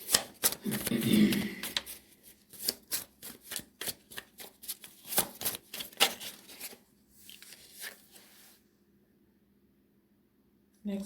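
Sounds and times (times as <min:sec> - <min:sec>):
cards being shuffled: 0:00.0 - 0:08.4.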